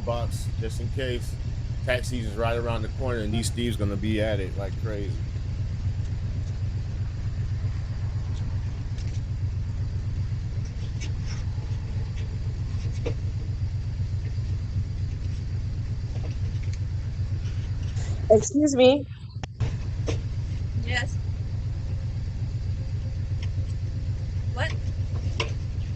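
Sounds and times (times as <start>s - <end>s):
low fluttering rumble: 0.0s - 25.9s.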